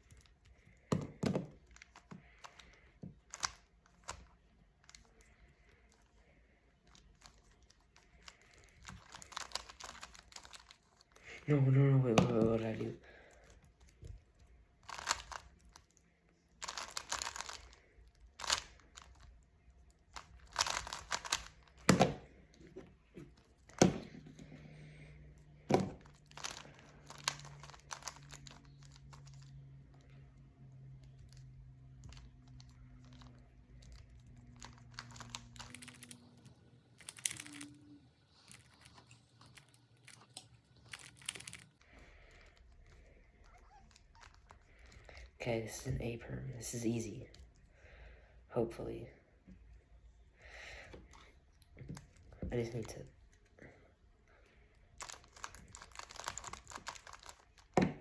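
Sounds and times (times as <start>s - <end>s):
plastic puzzle cube clicking: 0.8s - 5.2s, 6.9s - 11.1s, 14.8s - 15.7s, 16.6s - 19.2s, 20.1s - 22.3s, 25.7s - 29.5s.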